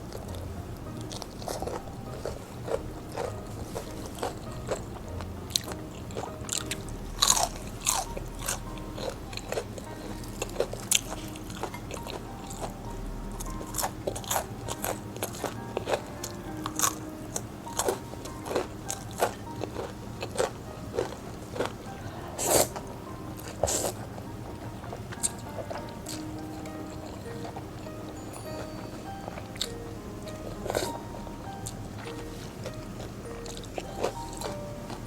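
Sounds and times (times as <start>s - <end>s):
crunchy chewing of fried chicken: 0.0s - 35.0s.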